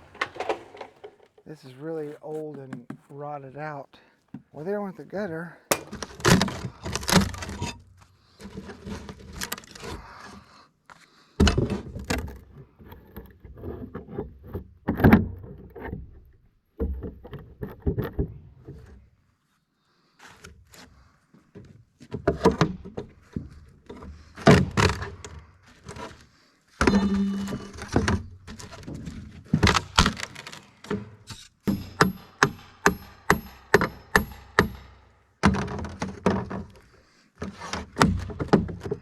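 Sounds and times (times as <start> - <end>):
wood and gutter knocking and clattering: 0.0 - 3.1, 4.3 - 6.5.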